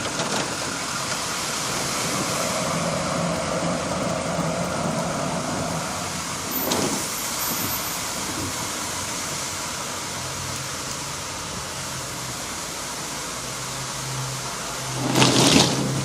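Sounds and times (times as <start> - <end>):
road traffic on wet street: 0.0 - 16.0
water pouring onto pavement: 0.0 - 16.0
vehicle passing by: 13.3 - 16.0.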